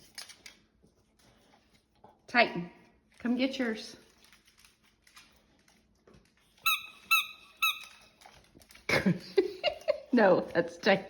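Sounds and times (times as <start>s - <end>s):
squeaky dog toy squeaking: 6.6s - 8.1s.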